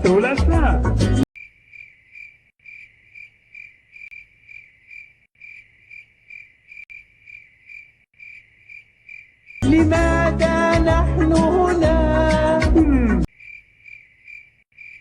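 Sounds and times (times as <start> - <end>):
insect chirping: 1.4 - 9.6, 13.3 - 15.0.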